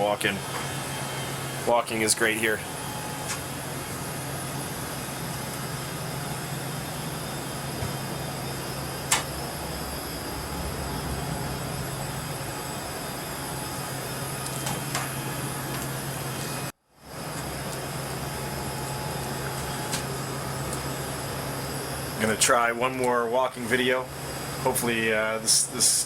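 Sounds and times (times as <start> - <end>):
ventilation fans hum and hiss: 0.0 - 26.0.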